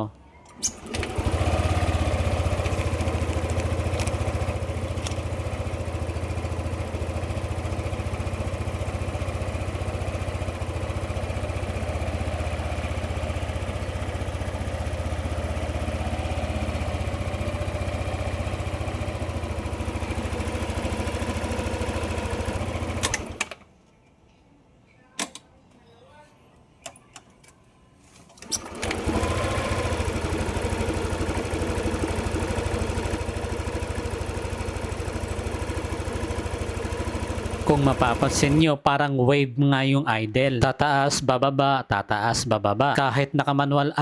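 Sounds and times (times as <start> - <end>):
scooter engine idling: 0.5 - 23.6, 28.4 - 38.6.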